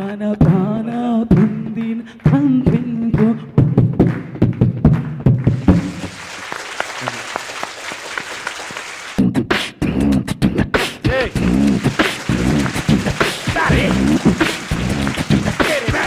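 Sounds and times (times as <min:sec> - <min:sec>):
audience applause: 0:05.5 - 0:09.2, 0:11.2 - 0:16.0.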